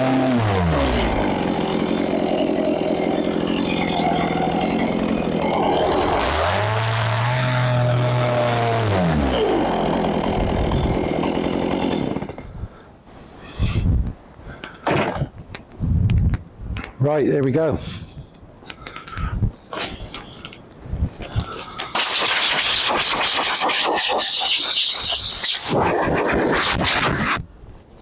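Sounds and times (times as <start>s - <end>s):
chainsaw engine running: 0.0s - 12.5s, 22.0s - 27.4s.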